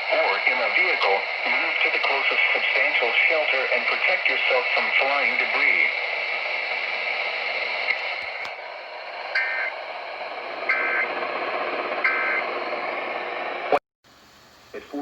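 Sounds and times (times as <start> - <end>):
radio hiss: 0.0 - 15.0
two-tone data bursts: 9.3 - 9.8, 10.7 - 11.1, 12.0 - 12.5.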